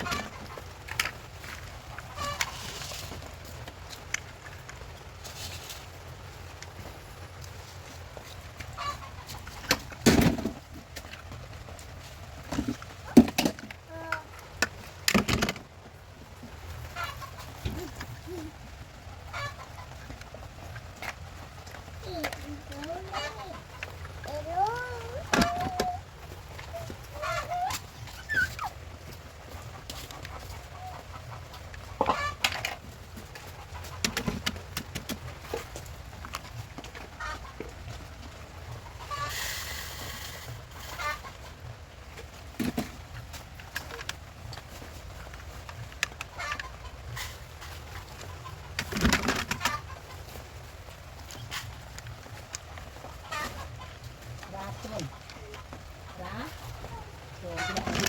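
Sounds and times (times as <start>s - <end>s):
chickens clucking: 0.0s - 58.0s
low steady hum: 0.0s - 58.0s
animal calls: 22.0s - 32.7s.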